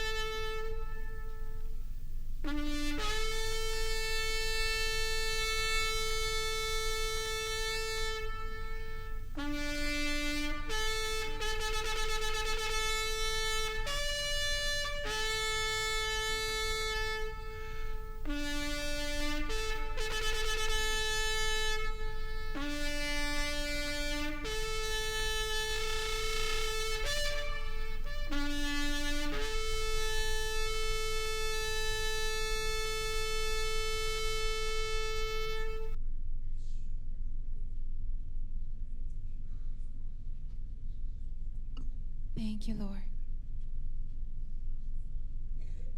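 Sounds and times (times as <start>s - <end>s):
shofar blown in long notes: 0.0s - 36.0s.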